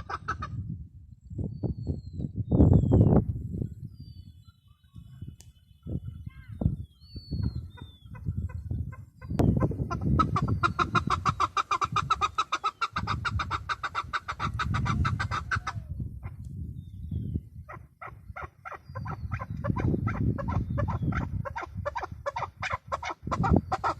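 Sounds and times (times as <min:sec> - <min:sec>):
birds calling: 0:00.0 - 0:00.6, 0:03.9 - 0:23.9.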